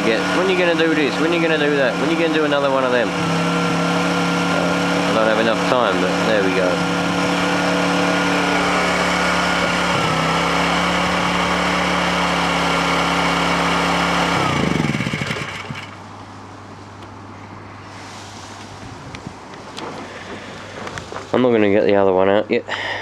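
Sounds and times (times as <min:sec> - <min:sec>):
engine running down: 0:00.0 - 0:16.5
generator engine running: 0:00.0 - 0:16.7.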